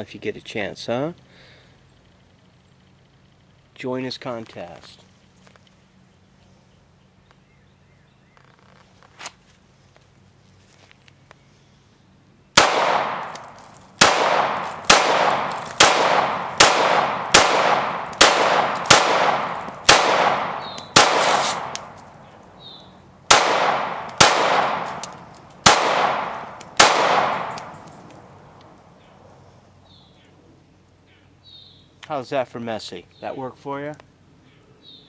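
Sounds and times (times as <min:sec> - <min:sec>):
pistol shots echoing: 0:12.6 - 0:22.0, 0:23.3 - 0:28.0.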